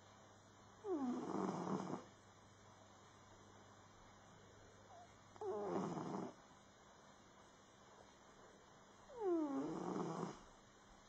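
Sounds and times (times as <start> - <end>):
faint hum and hiss: 0.0 - 11.0
cat snoring: 0.8 - 2.1, 4.9 - 6.4, 9.1 - 10.5.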